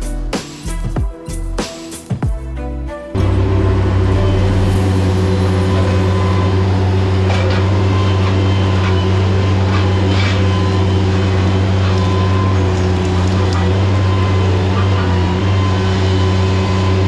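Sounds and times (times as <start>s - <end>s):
excavator diesel engine running: 3.2s - 17.0s
faint crackles: 4.5s - 16.1s.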